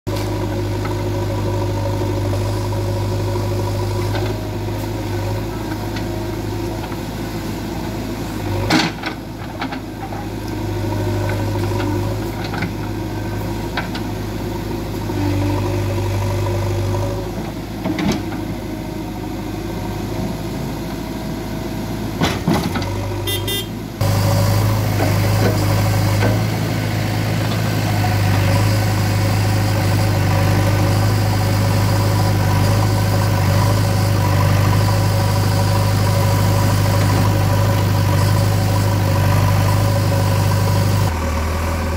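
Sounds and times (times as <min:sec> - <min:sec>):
diesel engine running: 0:00.1 - 0:41.9.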